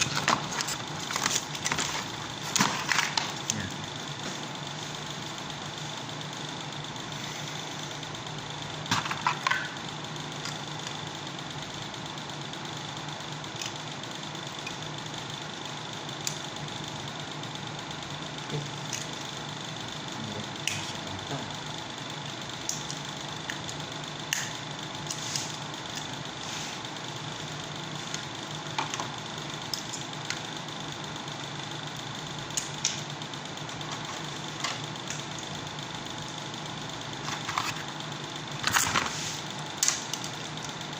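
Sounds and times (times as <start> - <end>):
steady hum: 0.0 - 40.9
clicks and knocks of tools: 28.1 - 30.4.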